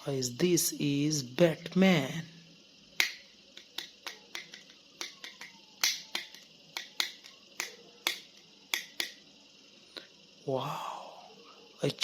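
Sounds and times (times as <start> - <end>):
plastic action figure clicking: 3.0 - 9.2.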